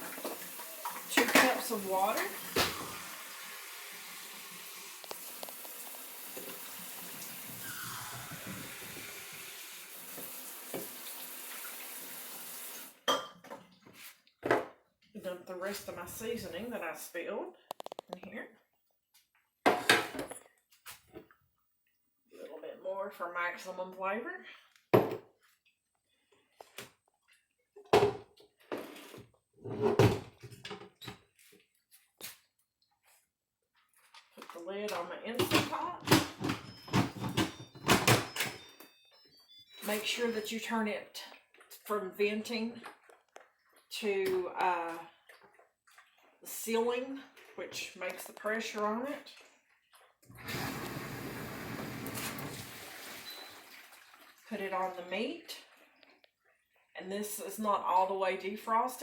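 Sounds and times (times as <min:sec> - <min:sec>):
kitchen knocks and clunks: 0:00.0 - 0:03.0, 0:14.4 - 0:14.8, 0:19.7 - 0:20.4, 0:25.0 - 0:25.3, 0:27.9 - 0:28.3, 0:35.4 - 0:38.7
water running from tap: 0:00.0 - 0:13.0, 0:50.4 - 0:54.5.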